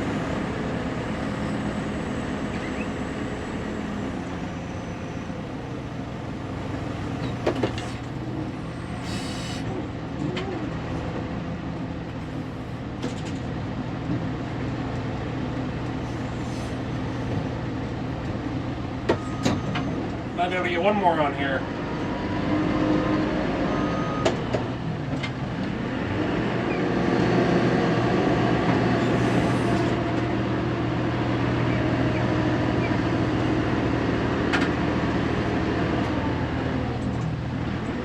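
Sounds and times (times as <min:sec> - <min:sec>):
diesel engine running: 0:00.0 - 0:38.0
short hiss: 0:09.0 - 0:09.6.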